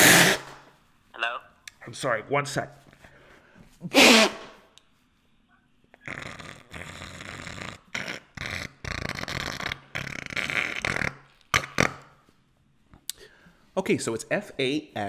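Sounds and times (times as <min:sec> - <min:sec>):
person blowing nose into tissue: 0:00.0 - 0:00.8, 0:03.7 - 0:04.7, 0:06.0 - 0:12.2.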